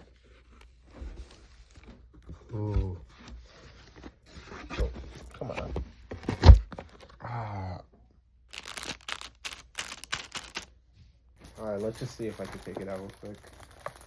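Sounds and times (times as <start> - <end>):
packaging tearing and crinkling: 8.5 - 10.7, 11.4 - 14.0.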